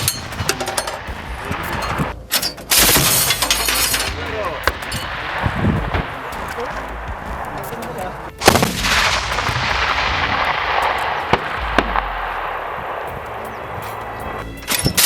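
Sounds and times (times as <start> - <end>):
sharp cracks: 0.0 - 15.0
autocannon gunfire: 2.7 - 14.1
loud blast: 8.4 - 14.4.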